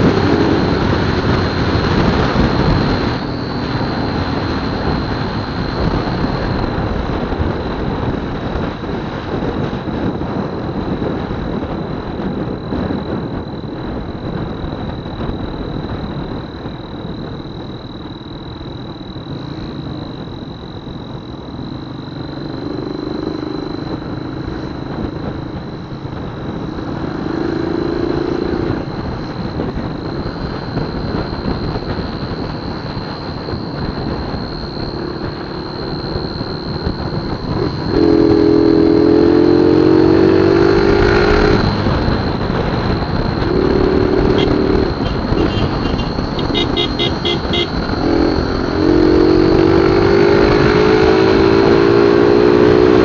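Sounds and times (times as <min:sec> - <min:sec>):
motorcycle engine rumble: 0:00.0 - 0:53.0
low hum: 0:09.6 - 0:52.5
turbo whistle: 0:30.2 - 0:39.2, 0:43.3 - 0:51.1.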